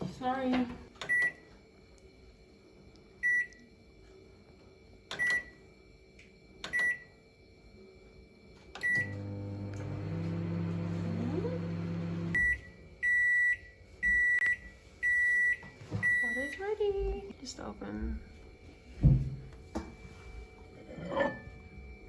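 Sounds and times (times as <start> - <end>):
long microwave beep: 1.0 - 1.5, 3.2 - 3.9, 5.0 - 7.8, 8.5 - 16.8
microwave keypad beeps: 1.0 - 1.5, 3.2 - 3.6, 5.1 - 5.6, 6.7 - 7.1, 8.8 - 9.2, 12.2 - 16.6
microwave humming: 4.9 - 14.7.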